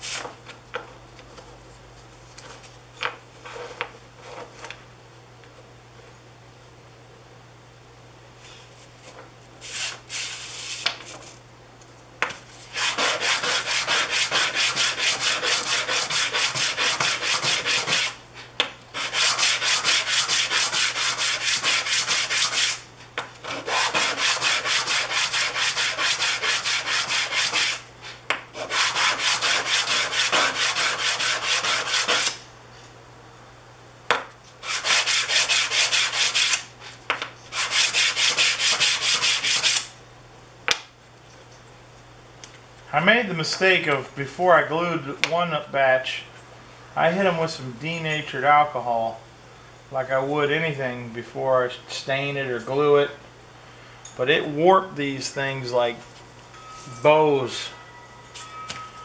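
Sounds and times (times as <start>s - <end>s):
wood sanding on sandpaper: 12.6s - 18.2s, 19.0s - 32.3s, 34.6s - 36.6s, 37.5s - 39.8s.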